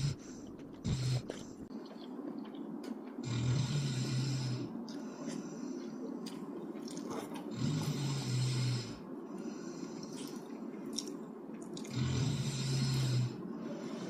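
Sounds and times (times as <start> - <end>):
person snoring: 0.0 - 1.6, 3.2 - 5.3, 7.5 - 9.9, 11.9 - 14.0
person chewing quietly: 0.0 - 8.1, 9.3 - 14.0.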